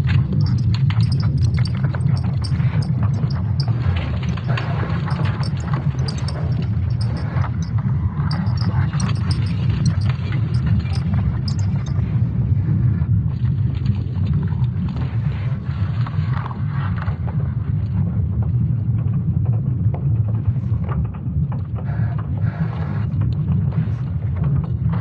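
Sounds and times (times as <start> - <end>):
crackles and creaking: 0.0 - 12.3.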